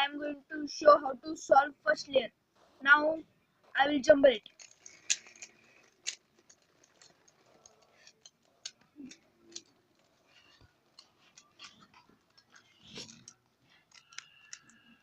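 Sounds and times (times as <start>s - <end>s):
puzzle cube plastic clicks: 4.5s - 15.0s.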